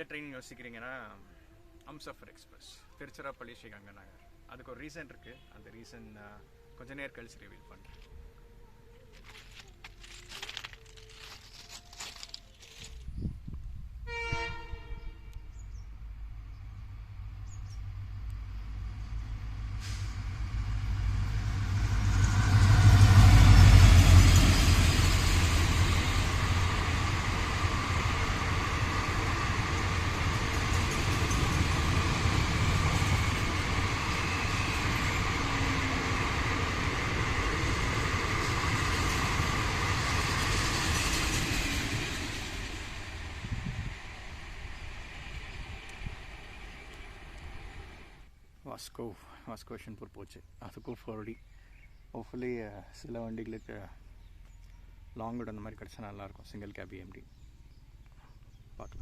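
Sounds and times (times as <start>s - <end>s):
train horn: 14.0s - 15.6s
locomotive engine rumble: 14.1s - 48.3s.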